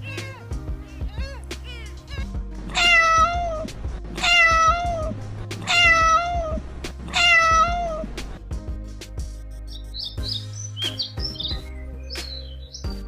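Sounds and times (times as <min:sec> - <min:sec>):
cat meowing: 0:00.0 - 0:08.2
background music: 0:00.0 - 0:13.0.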